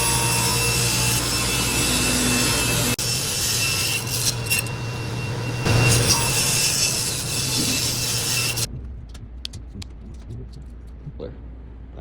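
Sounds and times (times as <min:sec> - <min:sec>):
power saw cutting wood: 0:00.0 - 0:08.7.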